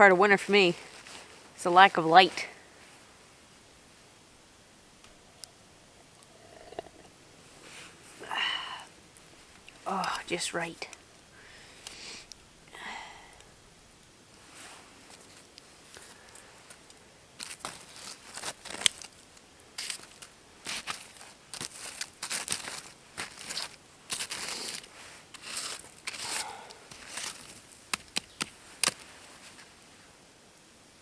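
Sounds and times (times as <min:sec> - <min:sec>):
rustling and crinkling: 0:00.7 - 0:04.0, 0:14.3 - 0:30.2.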